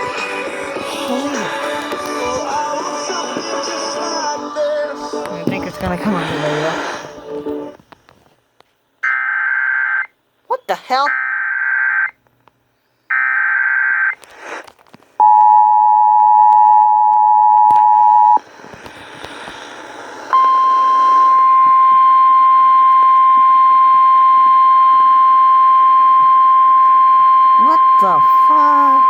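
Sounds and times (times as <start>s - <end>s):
radio hiss: 0.0s - 4.2s, 5.1s - 7.9s, 14.2s - 14.8s, 18.4s - 21.8s
single steady tone: 15.2s - 18.4s, 20.3s - 29.0s
two-tone attention signal: 27.2s - 29.0s.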